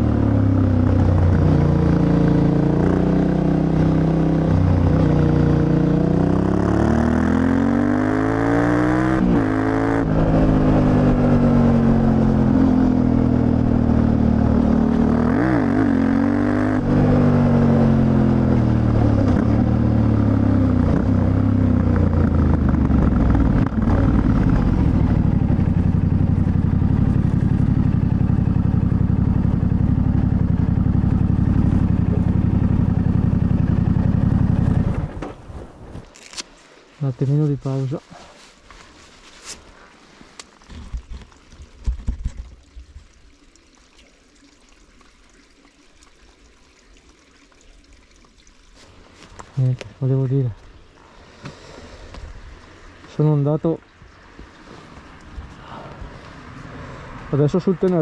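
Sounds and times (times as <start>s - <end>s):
motorcycle engine revving: 0.0s - 36.1s.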